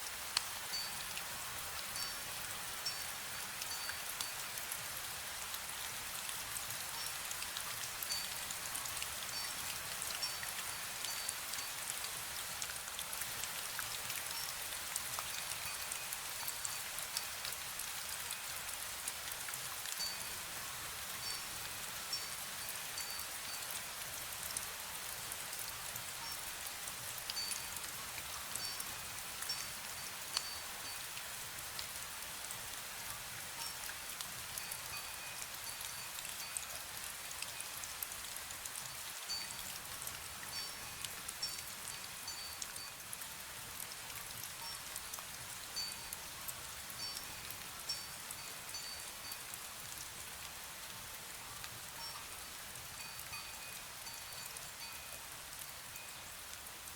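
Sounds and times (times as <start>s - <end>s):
fine rain falling: 0.0s - 56.9s
wind bell tinkling: 20.0s - 20.4s, 23.0s - 23.6s, 42.3s - 43.0s, 45.8s - 46.2s, 47.0s - 49.4s, 53.0s - 55.2s.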